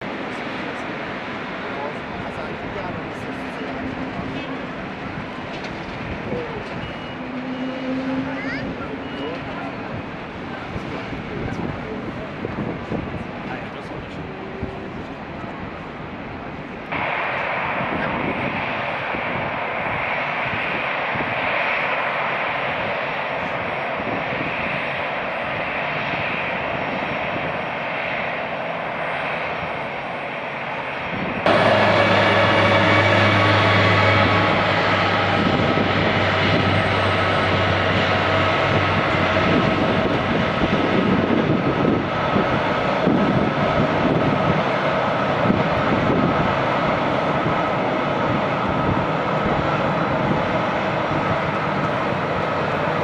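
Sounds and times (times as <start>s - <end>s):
jet engines roaring: 0.0s - 53.0s
steady whining tones: 0.0s - 53.0s
low hum: 30.8s - 53.0s.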